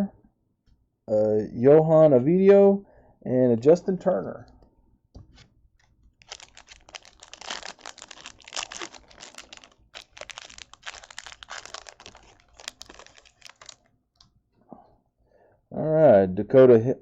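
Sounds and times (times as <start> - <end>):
foil wrapper tearing and crinkling: 6.2 - 13.9.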